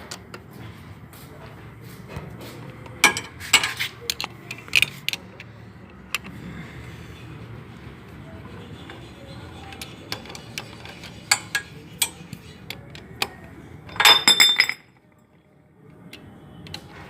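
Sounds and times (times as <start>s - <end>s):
metal tools clinking on engine: 13.9s - 15.0s.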